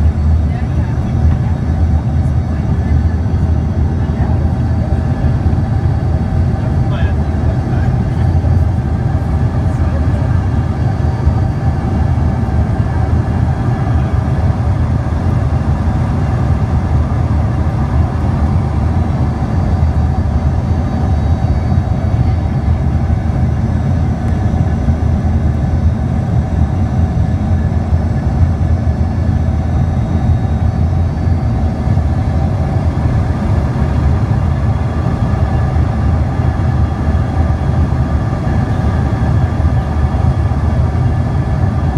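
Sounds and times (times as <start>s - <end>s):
faint steady engine whine: 0.0s - 41.9s
jet cabin low rumble: 0.0s - 41.9s.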